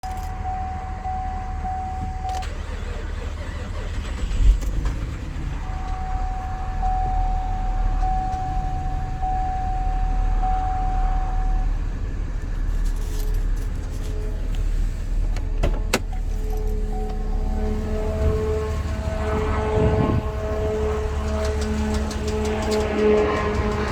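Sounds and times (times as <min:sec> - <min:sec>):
steady high tone: 0:00.0 - 0:02.6, 0:05.5 - 0:11.8, 0:16.3 - 0:23.9
car engine running: 0:00.0 - 0:23.9
engine tapping: 0:15.2 - 0:23.9.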